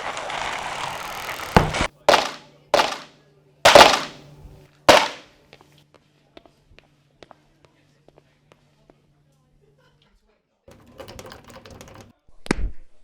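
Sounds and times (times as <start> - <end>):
sharp hits: 1.6 - 3.1, 3.7 - 4.2, 4.9 - 5.2.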